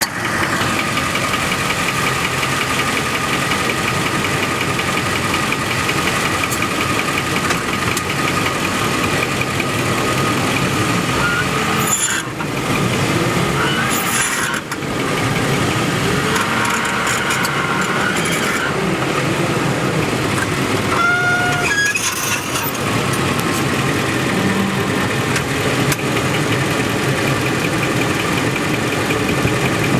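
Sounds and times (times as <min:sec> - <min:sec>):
truck engine running: 0:00.0 - 0:29.9
drivetrain grinding and scraping: 0:09.8 - 0:27.6.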